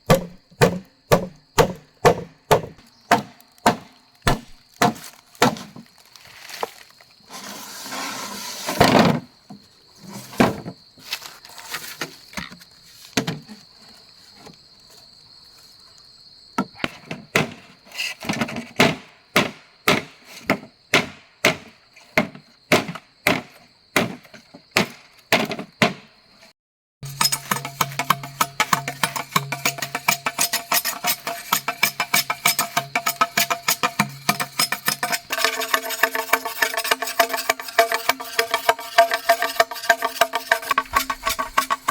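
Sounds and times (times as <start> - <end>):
wood being chopped: 0.0 - 5.9, 17.3 - 17.6, 18.8 - 26.1
rustling and cracking: 2.7 - 7.3, 9.6 - 16.1
music: 27.0 - 35.3.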